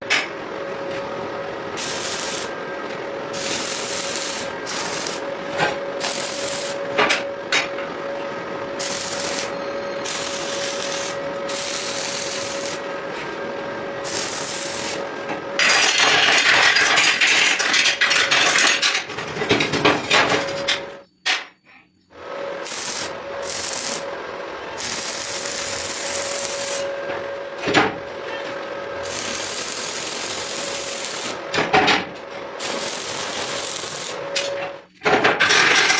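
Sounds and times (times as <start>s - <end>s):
steady machine hum: 0.0s - 35.9s
rasping hissing metalworking: 1.8s - 2.5s, 3.3s - 5.3s, 6.0s - 6.8s, 8.8s - 12.8s, 14.0s - 15.1s, 22.6s - 24.0s, 24.8s - 26.9s, 29.0s - 31.4s, 32.6s - 34.2s.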